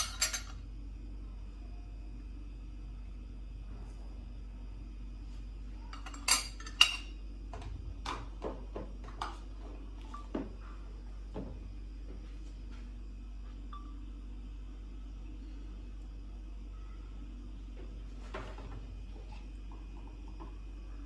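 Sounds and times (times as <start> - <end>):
dishes and utensils clinking: 0.0 - 0.6, 5.9 - 7.1.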